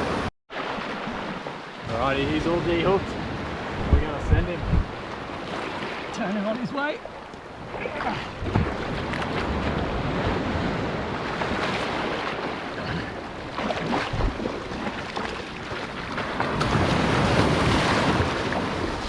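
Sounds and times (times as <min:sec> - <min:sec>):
waves washing in surf: 0:00.0 - 0:19.0
wind buffeting microphone: 0:01.9 - 0:05.8, 0:13.9 - 0:19.0.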